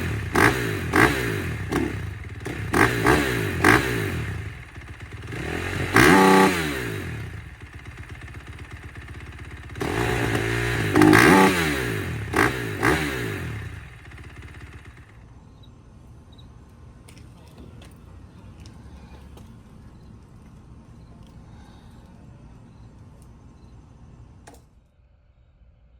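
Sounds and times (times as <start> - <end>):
motorcycle engine revving: 0.0 - 15.4.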